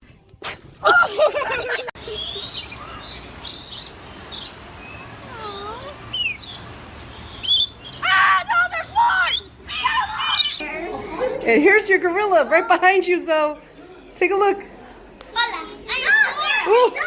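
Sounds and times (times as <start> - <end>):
small birds chirping: 2.0 - 10.6
wavering moan-like call: 5.2 - 6.7.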